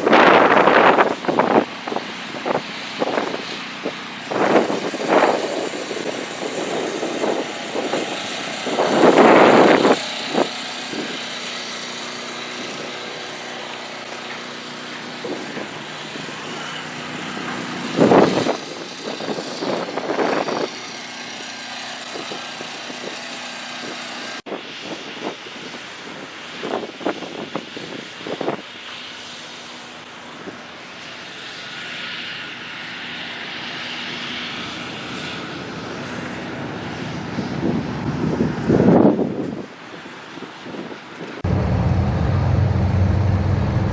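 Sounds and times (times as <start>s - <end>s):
car engines revving: 41.4s - 43.9s.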